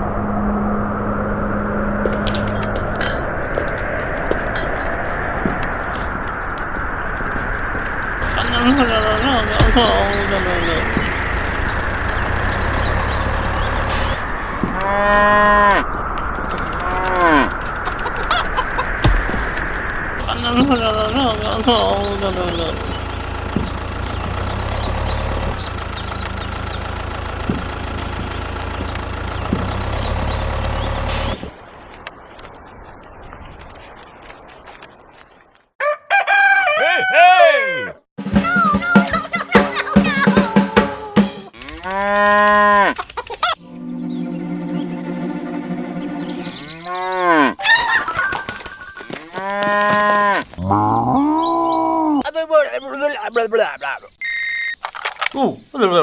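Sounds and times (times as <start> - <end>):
small tractor engine running: 2.1 - 18.0, 19.0 - 31.5.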